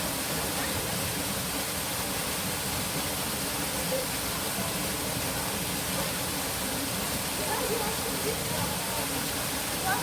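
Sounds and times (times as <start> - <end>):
falling water rushing: 0.0 - 10.0.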